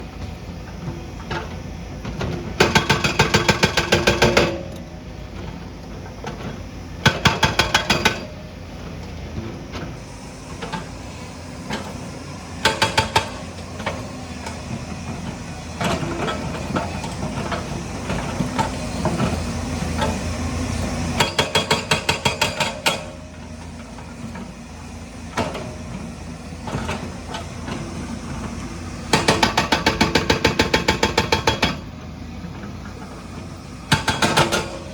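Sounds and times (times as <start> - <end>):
diesel engine running: 0.0 - 21.3, 23.0 - 34.9
hydraulic stone breaker hammering: 2.6 - 4.8, 7.0 - 8.3, 12.6 - 15.2, 21.2 - 23.4, 29.1 - 31.9, 33.9 - 34.9.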